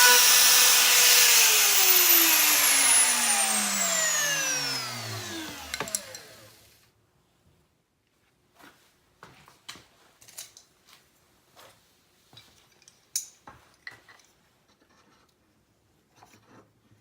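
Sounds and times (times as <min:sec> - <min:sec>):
router motor spinning down: 0:00.0 - 0:06.8.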